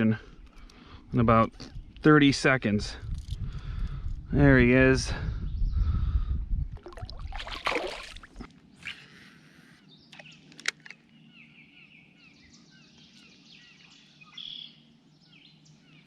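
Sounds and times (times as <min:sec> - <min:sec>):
small birds chirping: 0:08.7 - 0:16.0.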